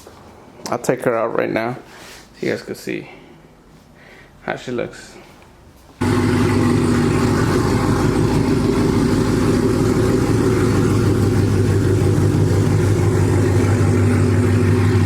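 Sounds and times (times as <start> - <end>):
car engine idling: 6.0 - 15.0.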